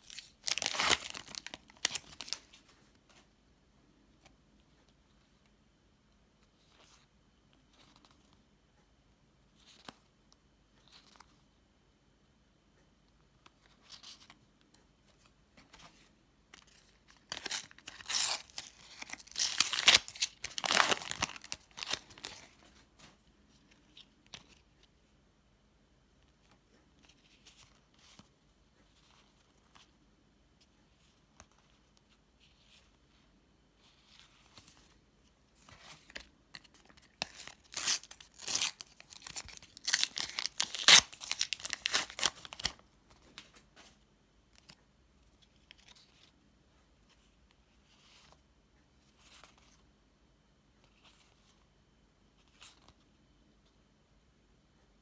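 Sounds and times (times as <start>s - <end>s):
paper packets tearing: 0.0s - 2.4s, 17.3s - 22.3s, 37.2s - 42.7s
wrappers crinkling: 0.0s - 2.6s, 17.3s - 22.5s, 37.2s - 42.8s.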